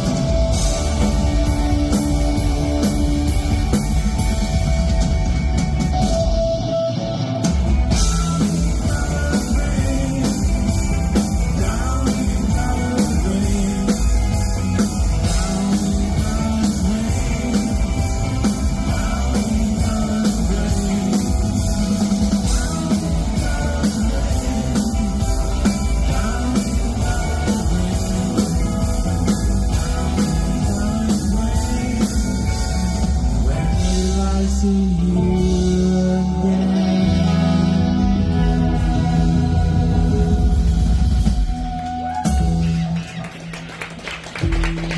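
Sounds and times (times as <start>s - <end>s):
drum kit beat on cymbals: 0.0s - 6.6s, 7.7s - 34.3s
bass guitar: 0.0s - 44.9s
electric guitars: 0.0s - 44.9s
person singing: 7.9s - 42.0s.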